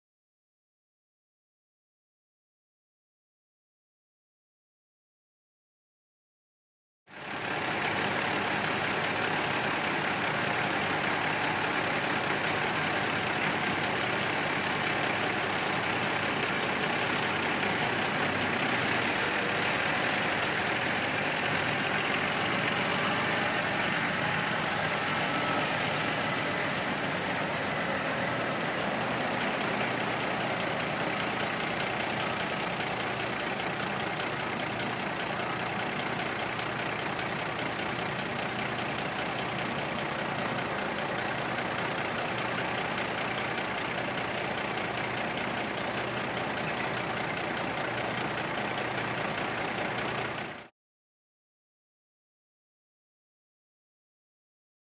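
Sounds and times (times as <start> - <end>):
diesel truck engines idling: 7.1 - 50.7.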